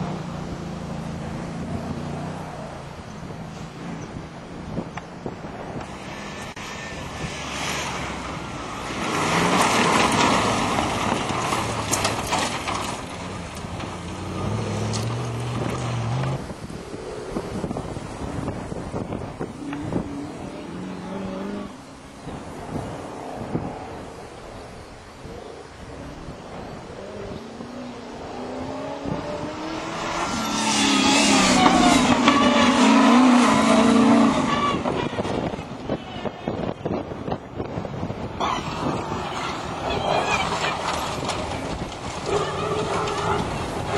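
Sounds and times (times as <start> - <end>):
off-road vehicle engine running hard: 0.0 - 24.2
rattles and clanks: 9.6 - 14.2.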